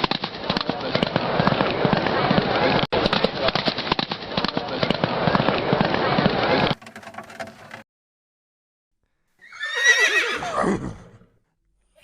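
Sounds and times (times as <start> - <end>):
horse whinnying: 9.4 - 11.4.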